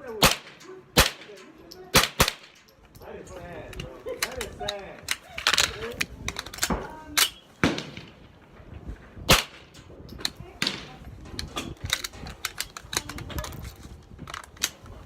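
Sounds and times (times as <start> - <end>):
gunshots: 0.2 - 2.6, 7.6 - 8.2.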